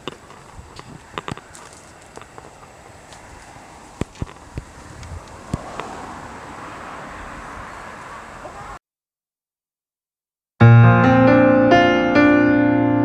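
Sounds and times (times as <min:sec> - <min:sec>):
sharp ticks: 0:00.0 - 0:06.0
strong wind blowing: 0:00.0 - 0:08.8.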